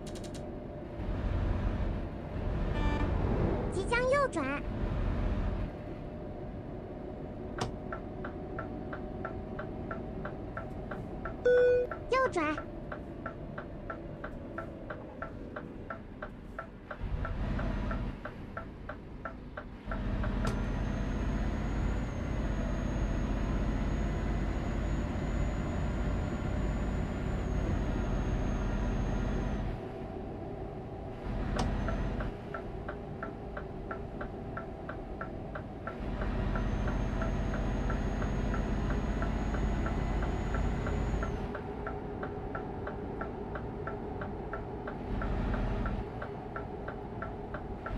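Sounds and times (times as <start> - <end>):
engine and road rumble: 0.0 - 47.9
turn signal clicking: 7.6 - 20.6, 31.6 - 47.9.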